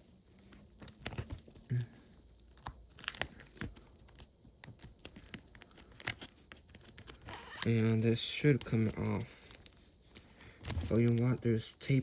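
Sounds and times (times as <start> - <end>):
tape and cardboard crinkling: 0.0 - 12.0.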